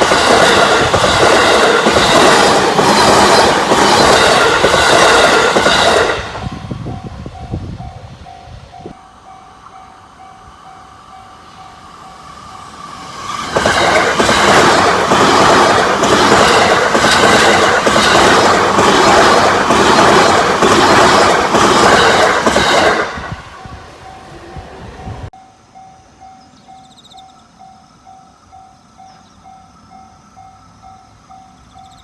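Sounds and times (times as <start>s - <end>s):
wheels clicking over rail joints: 0.0s - 6.4s, 8.9s - 24.3s
train passing at high speed: 0.0s - 32.0s.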